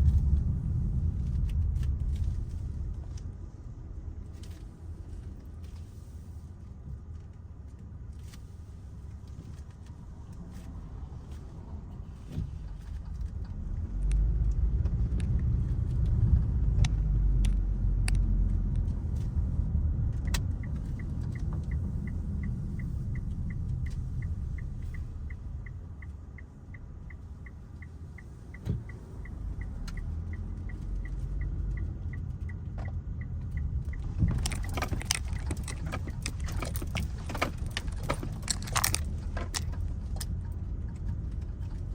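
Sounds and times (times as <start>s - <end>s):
car engine and road rumble: 0.0s - 41.9s
turn signal ticking: 9.1s - 41.9s
sharp clicks and rattles: 28.9s - 41.9s.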